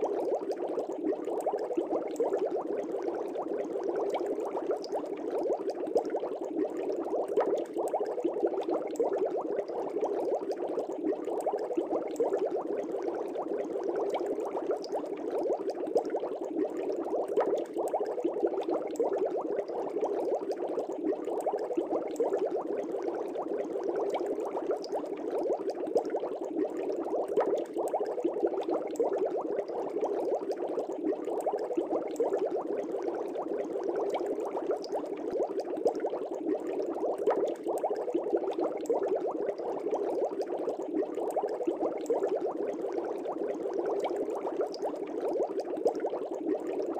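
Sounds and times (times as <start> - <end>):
aquarium air bubbling: 0.0 - 46.9.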